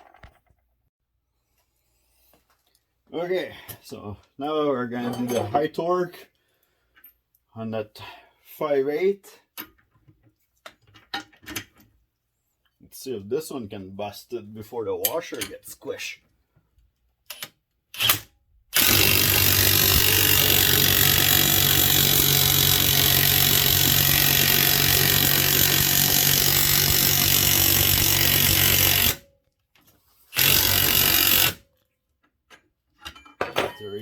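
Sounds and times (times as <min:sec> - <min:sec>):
impact wrench hammering: 0:18.8 - 0:29.2, 0:30.4 - 0:31.6.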